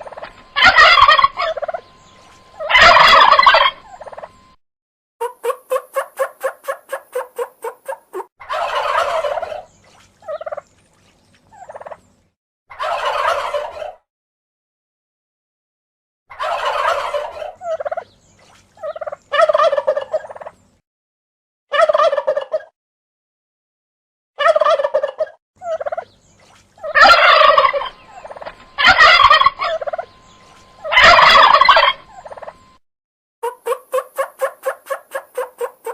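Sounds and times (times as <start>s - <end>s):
turkey gobbling: 0.0s - 4.5s, 5.2s - 10.6s, 11.6s - 12.0s, 12.7s - 14.0s, 16.3s - 18.1s, 18.8s - 20.6s, 21.7s - 22.7s, 24.4s - 26.2s, 26.8s - 32.8s, 33.4s - 35.9s.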